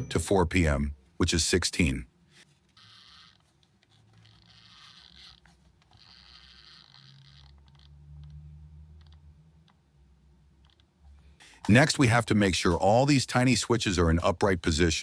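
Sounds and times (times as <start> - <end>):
plastic timer dial scraping: 2.3 - 8.4.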